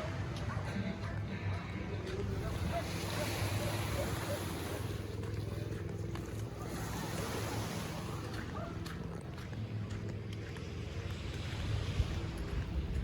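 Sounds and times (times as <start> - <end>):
low engine hum: 0.0 - 13.0
surf: 0.0 - 13.0
wind: 0.0 - 13.0.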